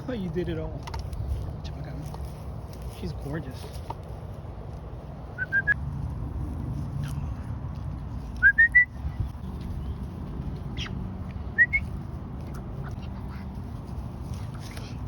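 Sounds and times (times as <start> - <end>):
duck peeping: 10.7 - 11.9.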